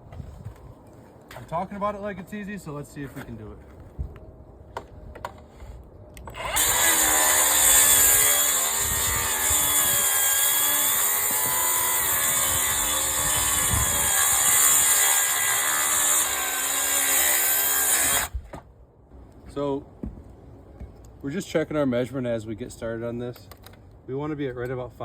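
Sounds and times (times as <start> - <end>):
track saw cutting boards: 6.2 - 18.3.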